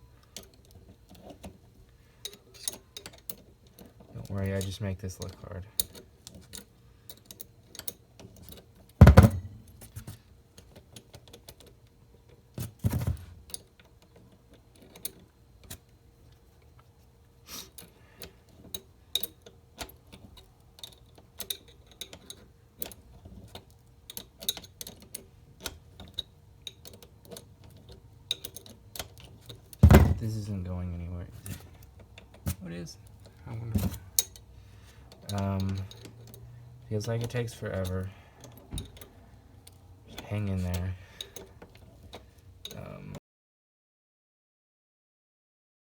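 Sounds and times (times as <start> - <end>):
metal parts clicking and clinking: 2.2 - 11.8, 17.7 - 30.5, 31.4 - 42.8
loud knocks: 9.0 - 9.6, 29.8 - 30.2.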